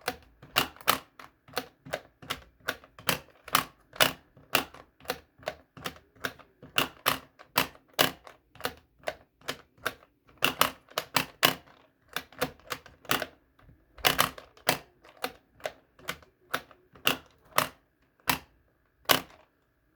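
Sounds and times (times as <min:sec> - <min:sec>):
plastic pop-up toy clicking: 0:14.0 - 0:18.5.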